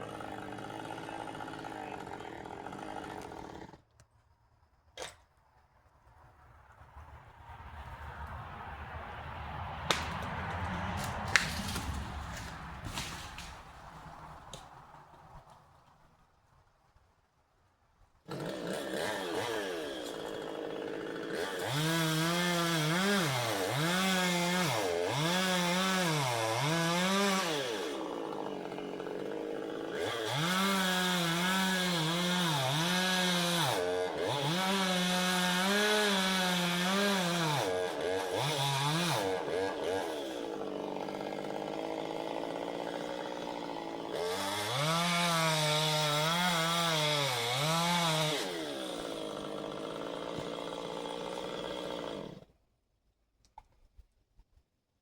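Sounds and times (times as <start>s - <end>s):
chainsaw revving: 0.0s - 3.9s, 9.9s - 13.7s, 18.3s - 52.5s.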